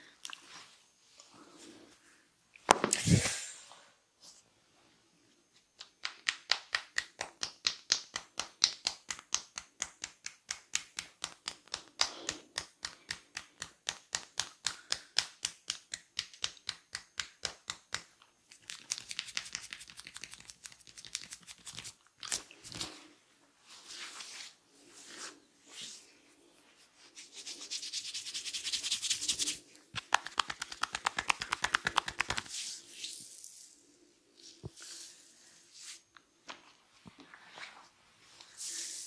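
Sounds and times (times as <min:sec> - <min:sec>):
hands tapping on head: 0:05.8 - 0:18.1, 0:30.0 - 0:32.5
hands rubbing hair and skin: 0:05.8 - 0:23.1, 0:23.7 - 0:33.4.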